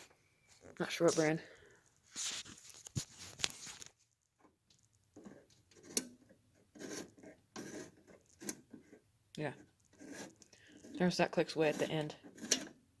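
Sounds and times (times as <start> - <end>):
hands scraping and rubbing: 0.7 - 1.4, 2.0 - 4.1.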